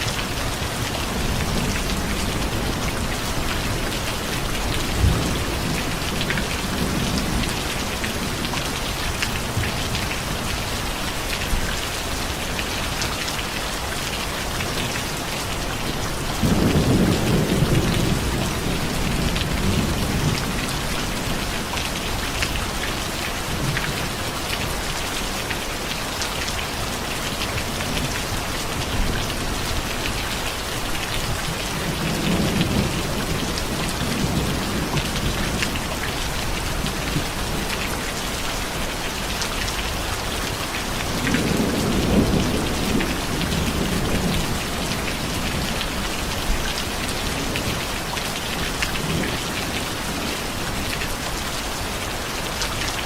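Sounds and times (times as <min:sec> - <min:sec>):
steady rain falling: 0:00.0 - 0:53.0
low thunder rumbling: 0:15.9 - 0:21.4.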